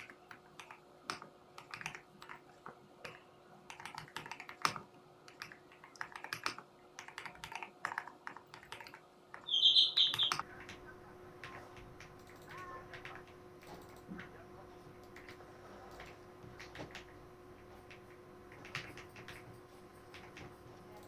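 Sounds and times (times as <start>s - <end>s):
short high-pitched chirp: 9.5s - 10.4s.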